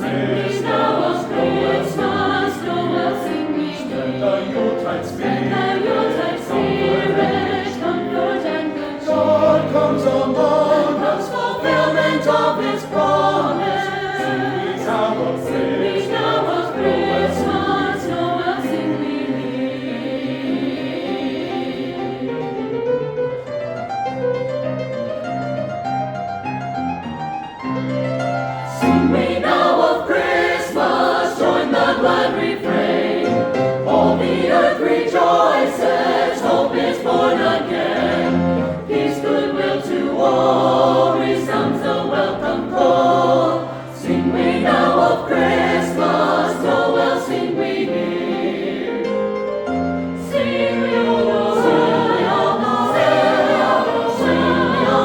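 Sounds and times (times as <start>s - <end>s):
choir singing in parts: 0.0s - 23.1s, 28.7s - 55.0s.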